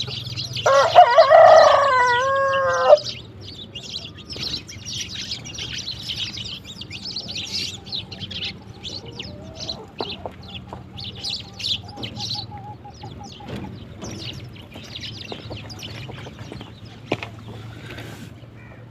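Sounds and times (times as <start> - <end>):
sparrows chirping: 0.0 - 18.9
chicken wavering call: 0.6 - 3.2, 5.7 - 13.6.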